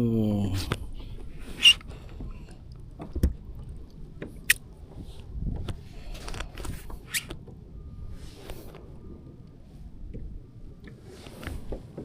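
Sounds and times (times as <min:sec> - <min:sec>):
short high squeaks: 0:01.5 - 0:01.8, 0:07.0 - 0:07.3.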